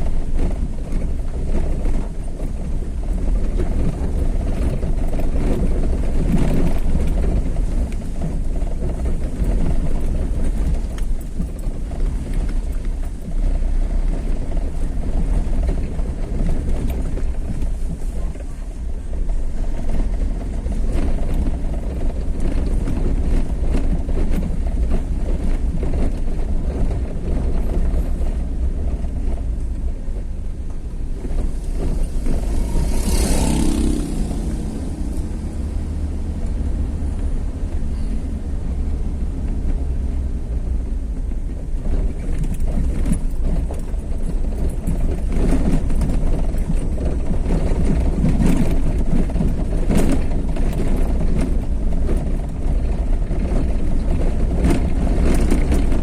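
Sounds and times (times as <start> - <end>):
vehicle road rumble: 0.0 - 56.0
vehicle passing by: 30.8 - 40.4.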